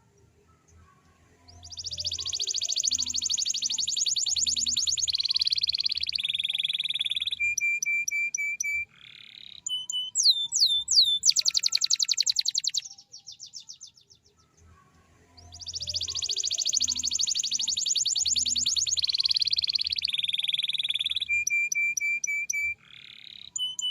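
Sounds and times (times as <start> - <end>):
canary singing trills: 0.2 - 23.9.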